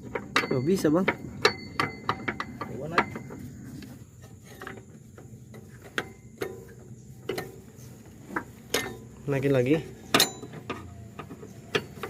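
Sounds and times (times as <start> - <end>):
hand tools knocking on metal: 0.0 - 3.4, 4.5 - 7.7.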